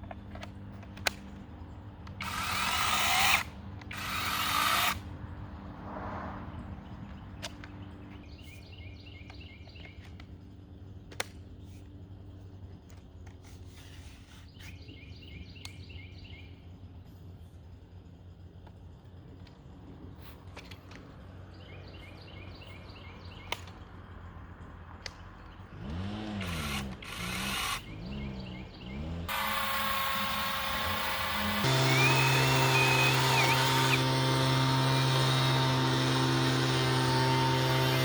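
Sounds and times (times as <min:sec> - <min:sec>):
chainsaw cutting branches: 0:02.1 - 0:05.1, 0:25.7 - 0:38.0.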